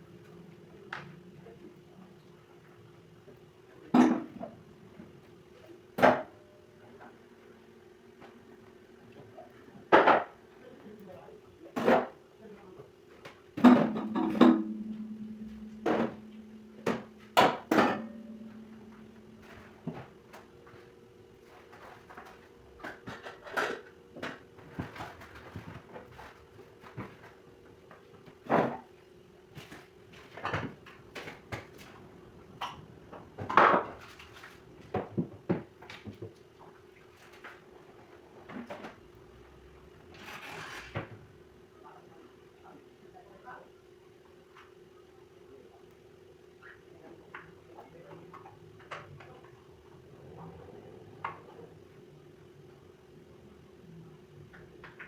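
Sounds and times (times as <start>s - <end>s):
faint steady hum: 0.0s - 55.0s
dishes and pots clattering: 3.9s - 4.6s, 13.6s - 20.9s.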